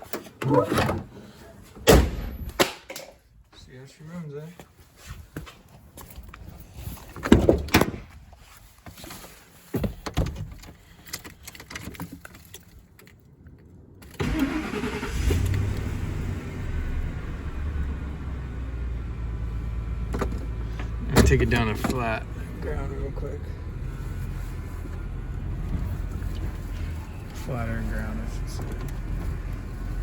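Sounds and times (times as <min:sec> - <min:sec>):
truck engine starting and idling: 0:14.0 - 0:30.0.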